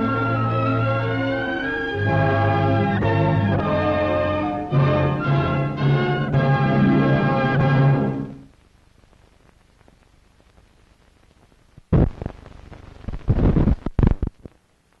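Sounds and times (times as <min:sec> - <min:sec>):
music: 0:00.0 - 0:08.5
film hiss with crackle: 0:00.0 - 0:15.0.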